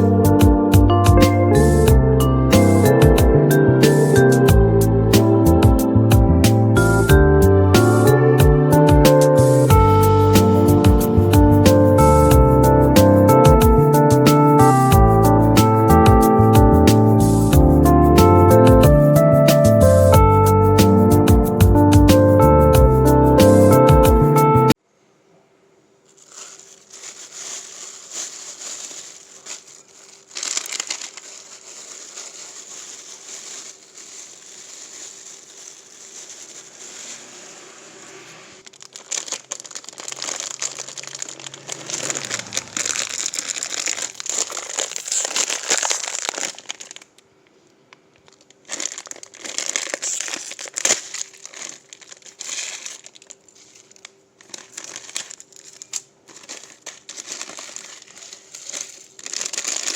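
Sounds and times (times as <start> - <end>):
plastic packaging crinkling: 26.0 - 59.9.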